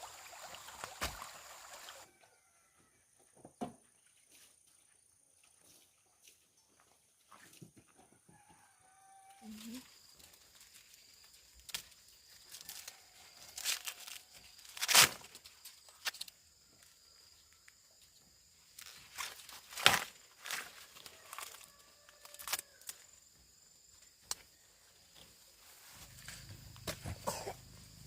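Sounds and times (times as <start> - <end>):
dry plants crackling and tearing: 11.5 - 15.4, 18.8 - 23.0.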